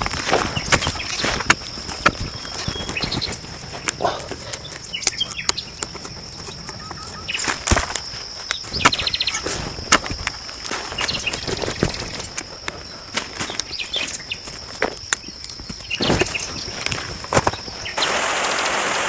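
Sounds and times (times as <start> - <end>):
knocks and rustles: 0.0 - 4.5, 5.8 - 17.8
bird chirps: 2.2 - 7.6, 8.5 - 9.5.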